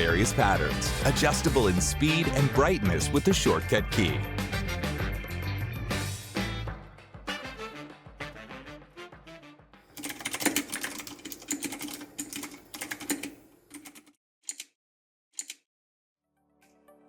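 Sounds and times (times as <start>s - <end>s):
mechanical keyboard typing: 10.0s - 14.7s, 15.4s - 15.6s.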